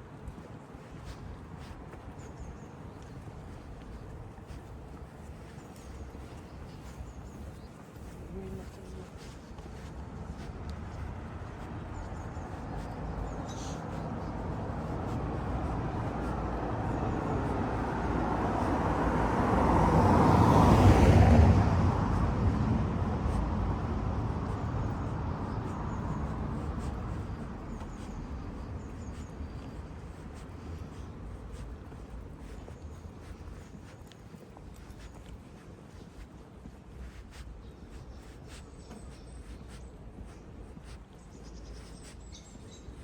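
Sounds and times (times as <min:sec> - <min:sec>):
vehicle passing by: 0:08.6 - 0:33.9.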